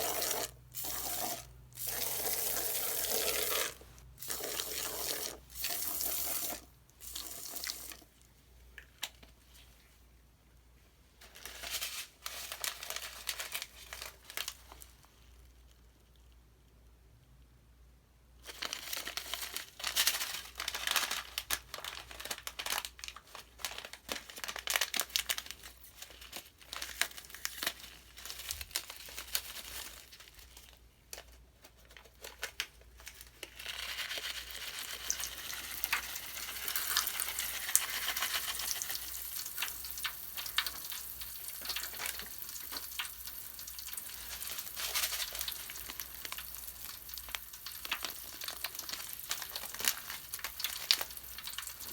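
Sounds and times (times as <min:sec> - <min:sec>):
soap crackling and fizzing: 0:11.2 - 0:16.1, 0:18.4 - 0:51.9.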